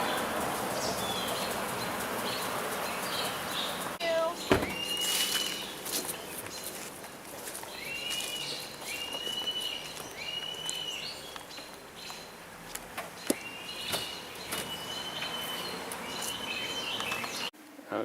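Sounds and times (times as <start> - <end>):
bird whistling: 4.4 - 6.4.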